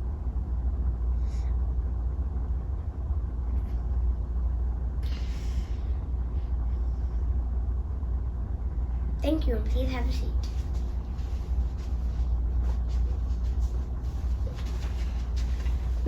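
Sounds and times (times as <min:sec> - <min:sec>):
low room rumble: 0:00.0 - 0:16.0.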